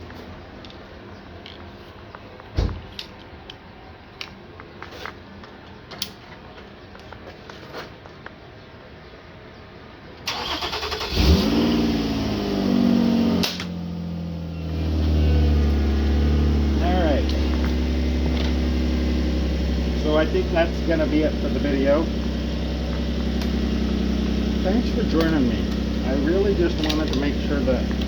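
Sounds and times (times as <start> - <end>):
thump: 2.6 - 2.9
engine cranking and starting: 10.3 - 13.8, 14.8 - 28.0.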